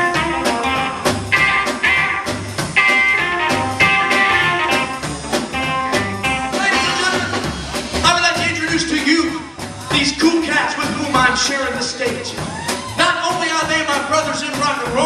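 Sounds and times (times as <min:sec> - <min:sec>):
electric guitar: 0:00.0 - 0:08.0
drum beat: 0:00.0 - 0:15.0
rockabilly band playing: 0:00.0 - 0:15.0
upright bass: 0:00.0 - 0:15.0.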